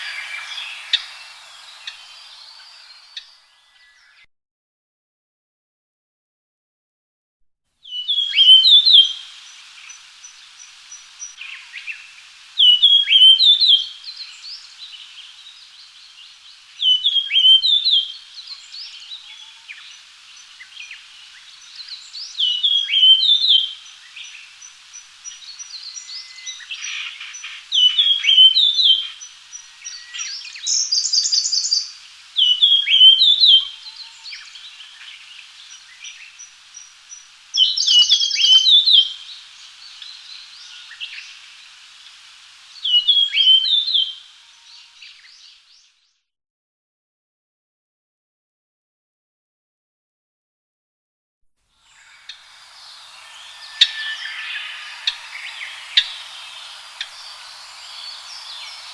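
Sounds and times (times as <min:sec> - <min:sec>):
high ticking calls: 0:00.0 - 0:03.5, 0:51.9 - 0:58.9
short buzzy bird call: 0:00.0 - 0:03.5, 0:51.9 - 0:58.9
bird whistled song phrase: 0:00.0 - 0:04.2, 0:51.9 - 0:58.9
faint bird chirps: 0:00.0 - 0:04.2, 0:07.9 - 0:45.9, 0:51.9 - 0:58.9.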